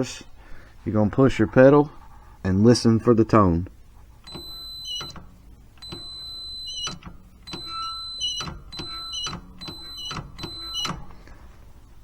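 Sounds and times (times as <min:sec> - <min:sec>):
multimeter continuity beeps: 0:04.2 - 0:11.2.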